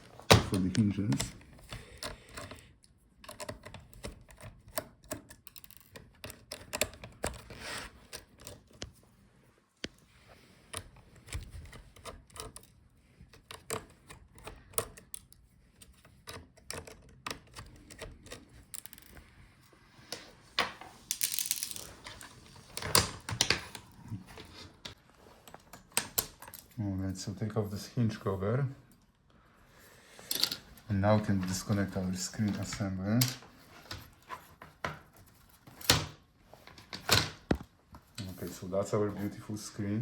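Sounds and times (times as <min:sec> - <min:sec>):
screwdriver and metal parts clicking: 0:03.2 - 0:07.5, 0:13.3 - 0:19.3, 0:21.1 - 0:23.8, 0:30.2 - 0:30.7
scraping handling noises: 0:09.8 - 0:26.8, 0:30.0 - 0:35.9.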